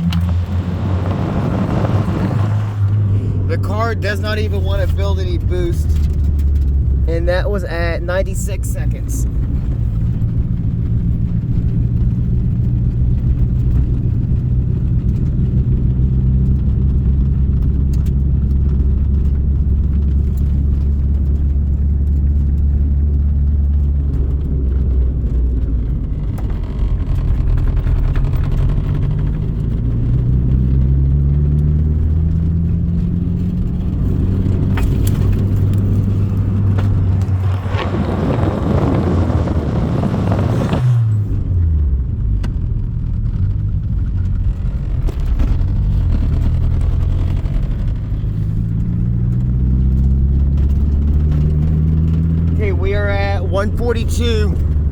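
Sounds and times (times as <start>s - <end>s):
car engine running: 0.0s - 54.9s.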